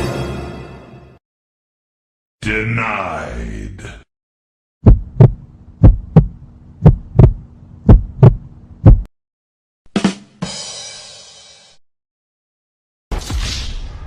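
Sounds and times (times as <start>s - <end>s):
heartbeat thumps: 4.8s - 9.1s
low steady hum: 4.9s - 9.1s
sudden hit and noisy crash: 13.1s - 14.0s.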